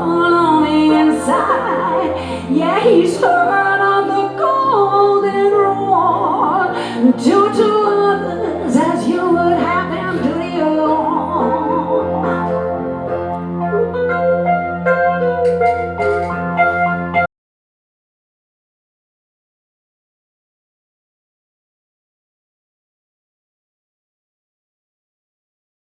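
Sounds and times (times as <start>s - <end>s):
sustained accompaniment chords: 0.0s - 17.3s.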